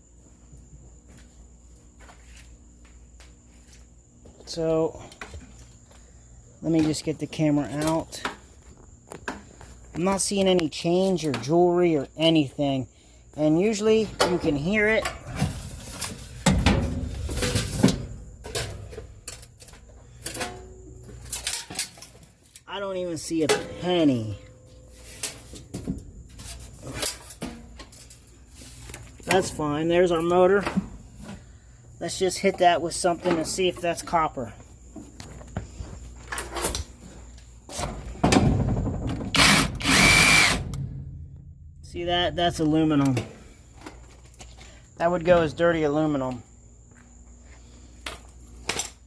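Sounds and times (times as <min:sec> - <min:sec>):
sheet metal clanking and rattling: 0:37.8 - 0:39.4.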